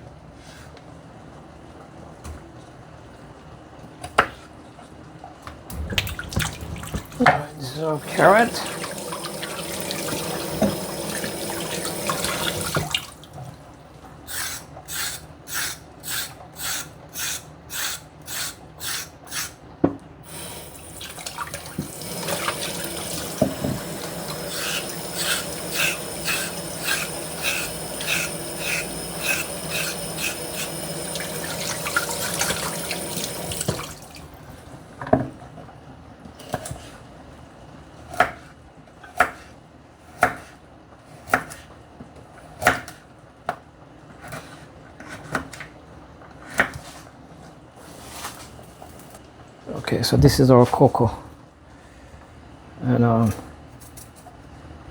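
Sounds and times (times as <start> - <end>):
tap running into sink: 5.7 - 13.5, 20.3 - 34.3
vegetable scraping strokes: 22.1 - 33.3.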